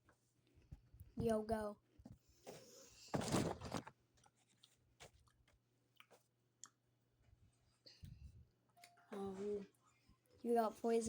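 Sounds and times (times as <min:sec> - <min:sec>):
crunching cereal: 0:03.1 - 0:06.2.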